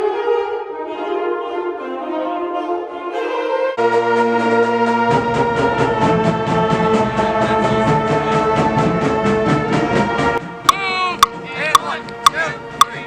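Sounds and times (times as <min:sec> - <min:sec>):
low brass and percussion beat: 0:05.1 - 0:13.0.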